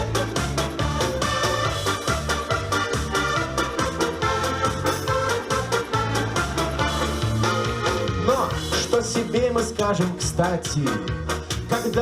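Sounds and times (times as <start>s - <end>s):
bass line: 0.0s - 12.0s
electronic keyboard chords: 0.0s - 12.0s
steady beat: 0.0s - 12.0s.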